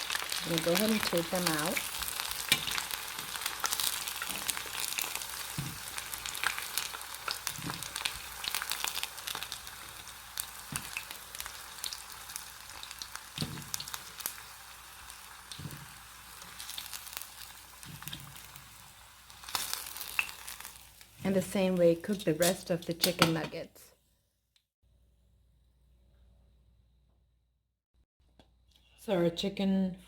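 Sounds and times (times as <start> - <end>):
chicken sizzling in hot oil: 0.0 - 23.2.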